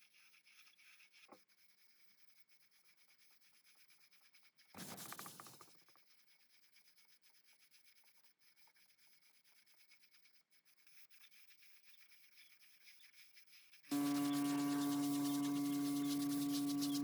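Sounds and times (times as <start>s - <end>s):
faint rubbing or scraping: 13.9s - 17.0s.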